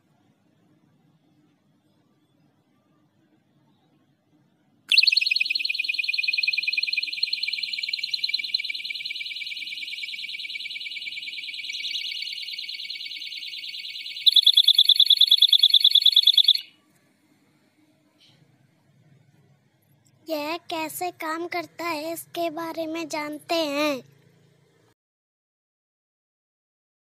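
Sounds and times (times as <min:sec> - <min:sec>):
shrill warbling electronic siren: 0:04.9 - 0:16.7.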